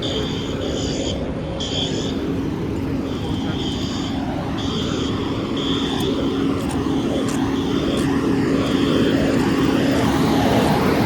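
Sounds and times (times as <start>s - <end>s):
fire engine droning: 0.0s - 11.0s.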